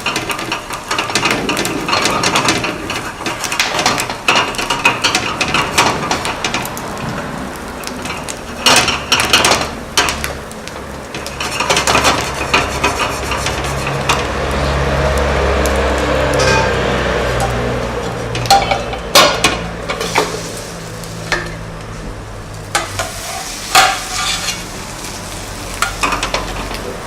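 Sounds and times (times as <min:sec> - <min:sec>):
dishes and utensils clattering: 0:08.0 - 0:10.2, 0:16.4 - 0:20.4, 0:22.7 - 0:24.7, 0:25.8 - 0:27.0.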